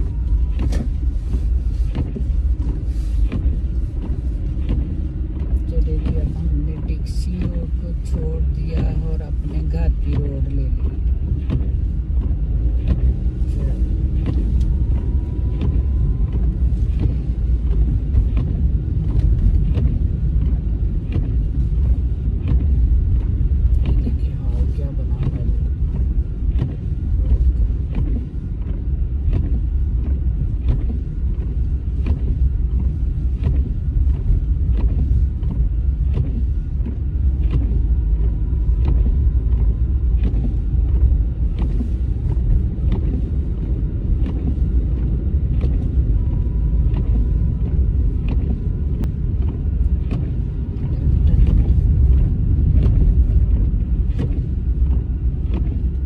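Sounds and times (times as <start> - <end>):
car engine and road rumble: 0.0 - 56.0
faint regular clicks: 25.1 - 56.0.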